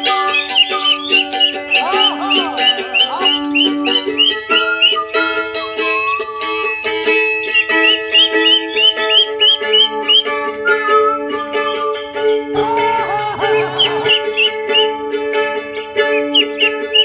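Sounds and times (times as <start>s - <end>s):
duck calling: 1.7s - 4.3s, 12.6s - 14.5s.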